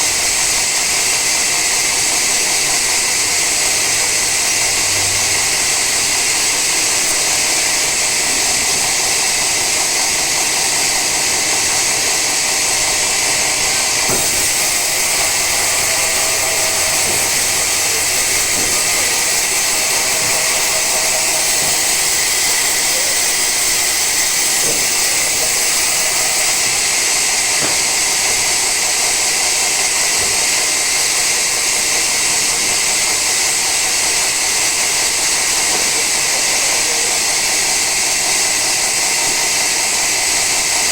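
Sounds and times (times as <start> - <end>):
saw blade cutting wood: 0.0 - 40.9.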